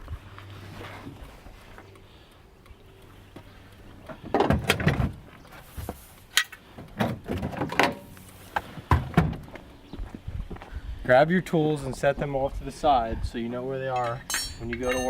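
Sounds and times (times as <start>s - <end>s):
tools knocking and clanking: 13.9s - 15.0s.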